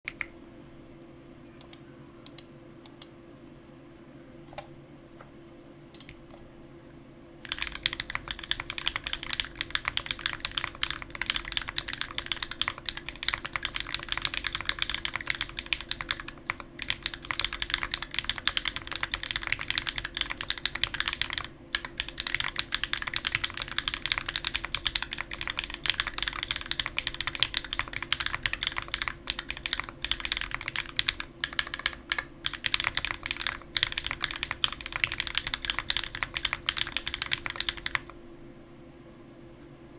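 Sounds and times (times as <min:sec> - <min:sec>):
mechanical keyboard typing: 0:07.4 - 0:38.2.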